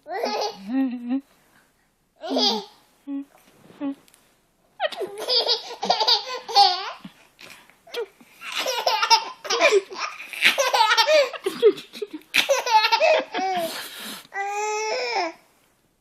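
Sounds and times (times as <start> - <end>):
baby laughing: 0.1 - 0.6, 2.2 - 2.8, 4.8 - 7.1, 8.4 - 13.8.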